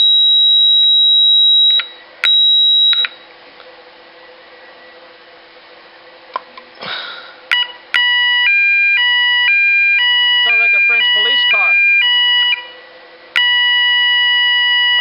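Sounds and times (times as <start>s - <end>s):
high-pitched alarm tone: 0.0s - 3.2s, 7.5s - 15.0s.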